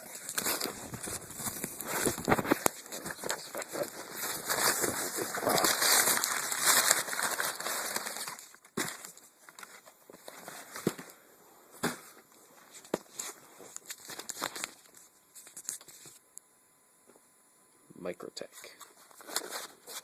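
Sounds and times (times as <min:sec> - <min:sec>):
packaging tearing and rustling: 0:00.0 - 0:11.1, 0:12.8 - 0:16.2, 0:18.9 - 0:20.0.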